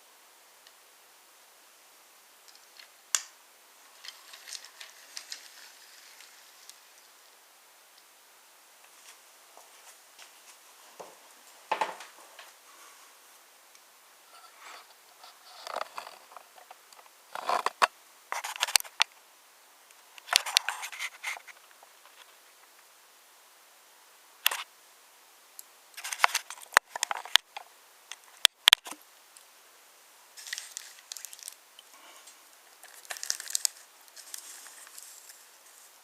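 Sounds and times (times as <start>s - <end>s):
wooden toy trains clattering: 4.0s - 6.8s.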